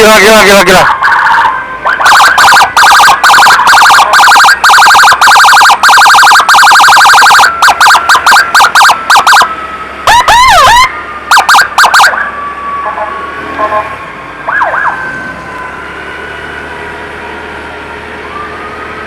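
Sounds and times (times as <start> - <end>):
ambulance siren chirping yelp: 0.1 - 19.0
siren wail sweeps: 0.1 - 19.0.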